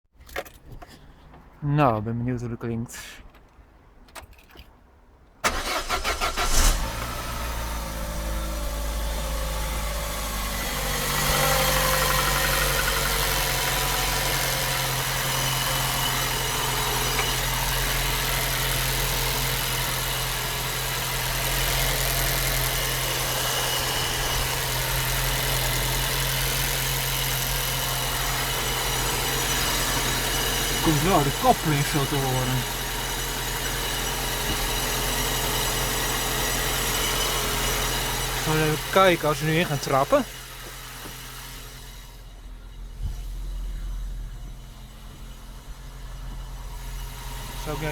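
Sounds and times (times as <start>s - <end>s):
clutch noise: 5.4s - 41.4s
engine starter cranking: 5.4s - 41.8s
car engine idling: 5.4s - 47.9s.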